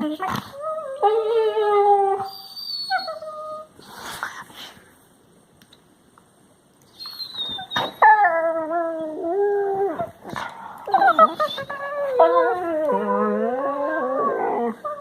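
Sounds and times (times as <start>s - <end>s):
puppy whining and howling: 0.5s - 3.7s, 6.9s - 10.3s, 10.9s - 15.0s.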